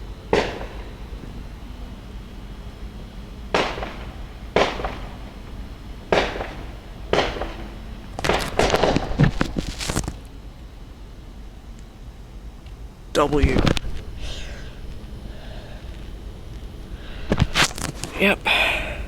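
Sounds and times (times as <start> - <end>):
fireworks bangs: 0.0 - 1.8, 2.4 - 10.3, 13.2 - 18.6
fireworks crackling: 0.0 - 19.0.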